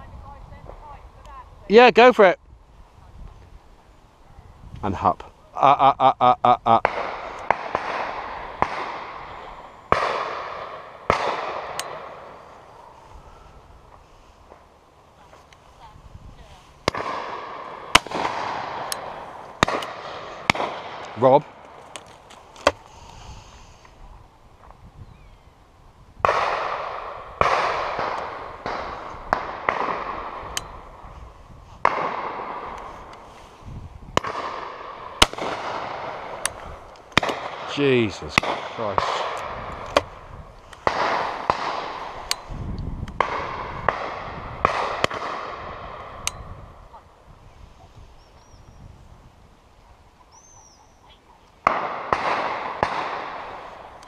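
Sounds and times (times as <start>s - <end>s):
shotgun shots with echo: 6.8s - 9.3s, 9.9s - 12.3s, 16.8s - 21.4s, 26.2s - 30.8s, 34.2s - 36.4s, 37.2s - 40.2s, 40.8s - 42.4s, 43.2s - 46.2s, 51.6s - 53.9s.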